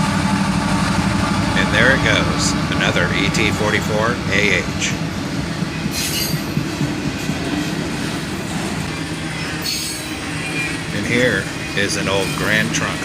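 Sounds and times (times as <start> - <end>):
freight train wheels rumbling on rail: 0.0 - 13.0
high wheel squeals: 5.6 - 6.6, 8.7 - 13.0.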